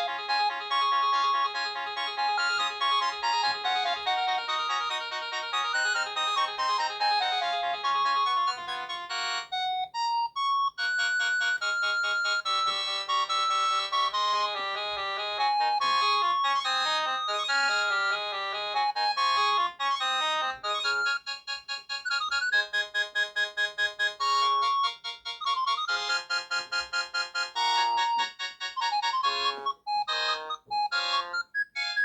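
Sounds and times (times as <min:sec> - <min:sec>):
polyphonic ringtone melody: 0:00.0 - 0:18.8, 0:22.1 - 0:32.0.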